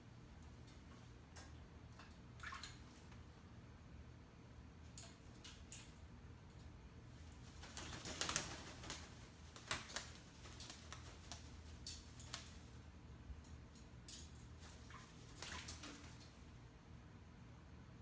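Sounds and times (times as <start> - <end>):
parrot splashing in water: 1.4 - 3.3, 7.2 - 12.8, 13.8 - 16.6.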